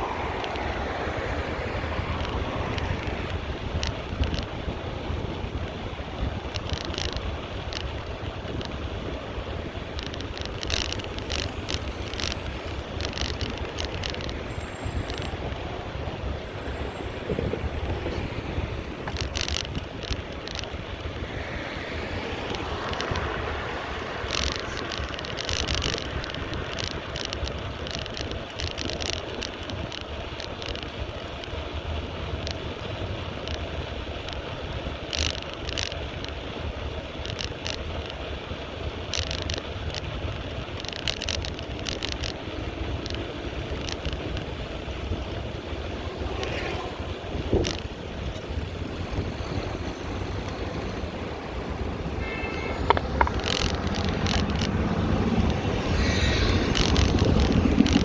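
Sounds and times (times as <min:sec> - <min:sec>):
vehicle passing: 0:00.0 - 0:04.4, 0:20.8 - 0:27.8, 0:42.6 - 0:58.0
bicycle clicks and rattles: 0:00.0 - 0:58.0
wind rushing over microphone: 0:00.0 - 0:58.0.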